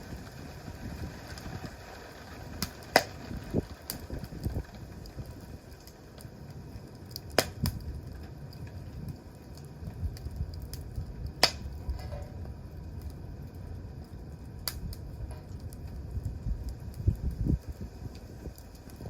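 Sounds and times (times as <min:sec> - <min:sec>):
campfire crackling: 0:00.0 - 0:19.0
sharp pops of fire: 0:00.0 - 0:19.0
steady low rumble: 0:00.0 - 0:19.0.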